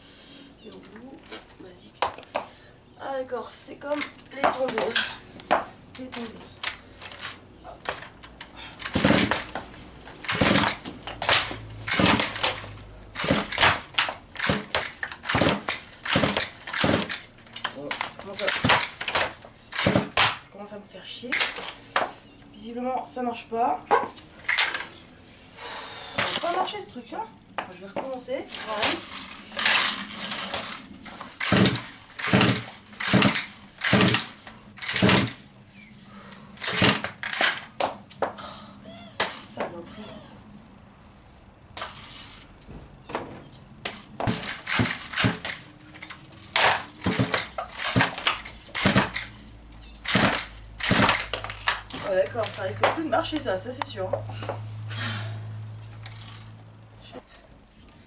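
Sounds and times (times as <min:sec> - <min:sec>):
small engine cranking: 0:10.2 - 0:20.3, 0:28.5 - 0:35.4, 0:41.8 - 0:42.5, 0:44.3 - 0:52.2, 0:56.0 - 0:56.6.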